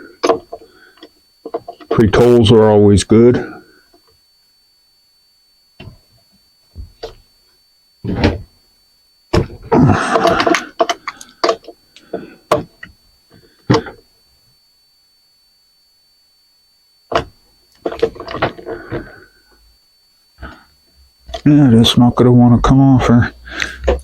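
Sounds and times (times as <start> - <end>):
metal parts knocking and clanking: 17.1 - 19.0.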